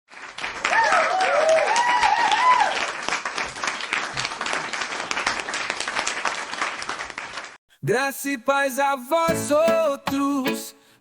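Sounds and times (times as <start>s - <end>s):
crowd clapping: 0.1s - 7.6s
voices cheering and whooping: 0.7s - 2.8s.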